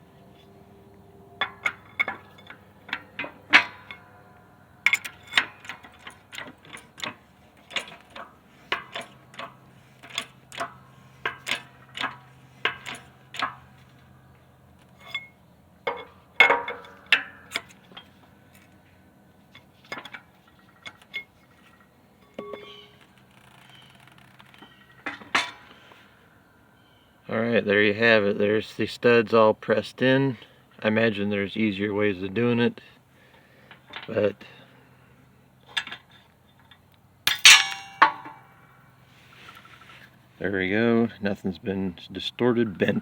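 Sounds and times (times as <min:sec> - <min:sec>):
metal tools clinking: 0:01.4 - 0:14.1, 0:14.8 - 0:18.7, 0:19.5 - 0:23.8, 0:24.4 - 0:25.7, 0:37.3 - 0:38.5.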